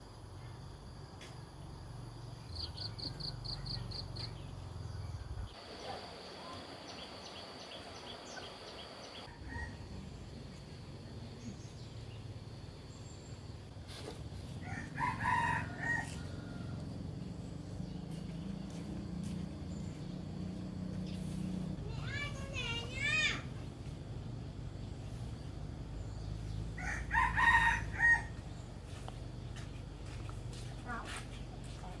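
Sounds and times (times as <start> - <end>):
birds chirping: 2.5 - 9.3
rooster crowing: 9.3 - 10.0, 14.6 - 17.2, 26.8 - 28.6.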